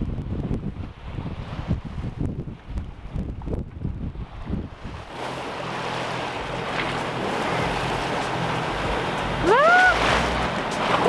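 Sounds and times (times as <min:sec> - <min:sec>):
wind and water rushing: 0:00.0 - 0:11.0
boat engine drone: 0:05.1 - 0:11.0
short high cry: 0:09.4 - 0:10.2.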